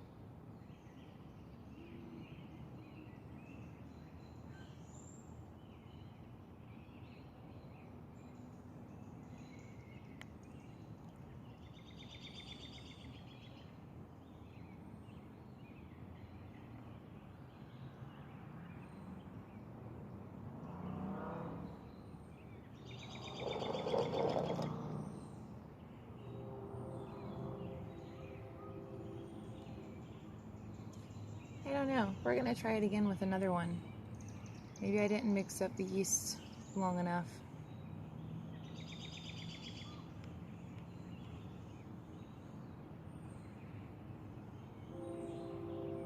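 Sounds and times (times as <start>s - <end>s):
low background noise: 0.0s - 46.0s
high rapid bird trills: 22.9s - 25.1s
birds calling: 22.9s - 25.5s.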